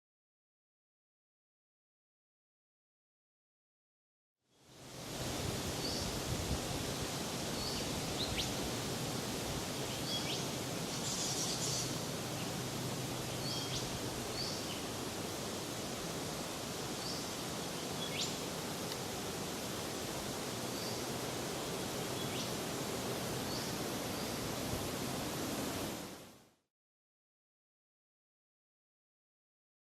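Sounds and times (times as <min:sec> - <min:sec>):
outdoor bush ambience: 0:04.5 - 0:26.6
small birds chirping: 0:07.5 - 0:08.6, 0:09.7 - 0:15.0, 0:16.9 - 0:19.6, 0:22.0 - 0:22.6.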